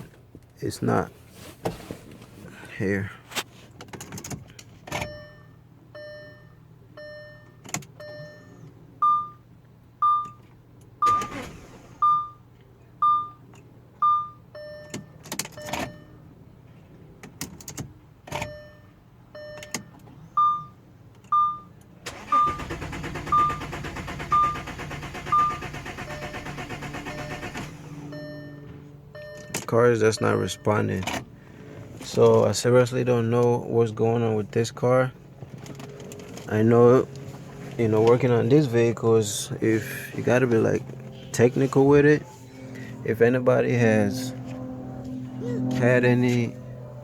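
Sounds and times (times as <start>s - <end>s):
starter cranking engine: 22.1s - 27.9s
warning chime beeping: 25.3s - 30.9s
low hum: 34.3s - 47.0s.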